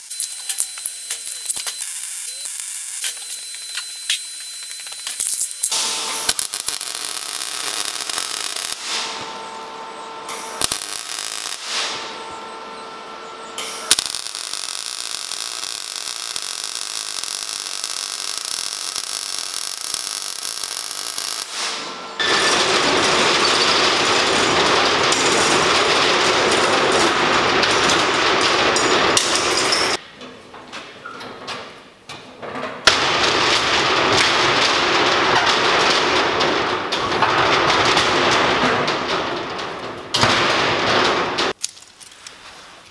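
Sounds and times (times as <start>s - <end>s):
harsh crackling noise: 0.0s - 29.5s.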